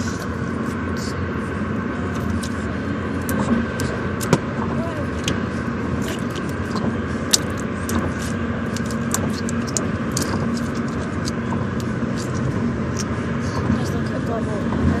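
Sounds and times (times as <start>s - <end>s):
steady low rumble: 0.0s - 15.0s
sharp clicks and crackles: 6.0s - 13.1s.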